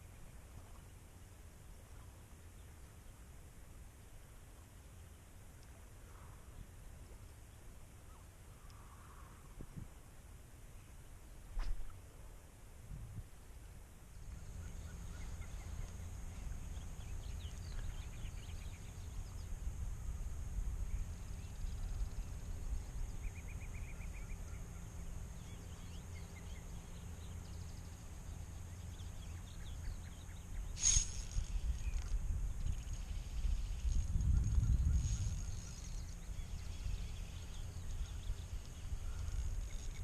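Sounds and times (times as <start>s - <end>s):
steady low rumble: 11.6s - 40.0s
bird trill: 20.9s - 40.0s.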